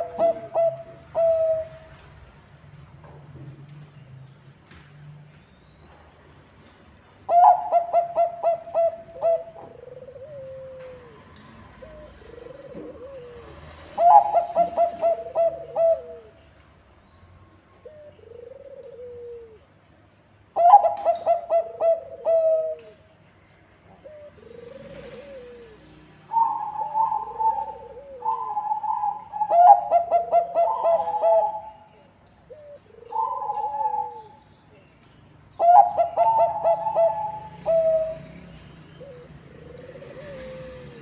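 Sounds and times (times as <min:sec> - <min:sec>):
dove cooing: 0:00.0 - 0:02.0, 0:07.3 - 0:16.4, 0:17.8 - 0:19.7, 0:20.6 - 0:23.1, 0:23.9 - 0:34.4, 0:35.5 - 0:41.0.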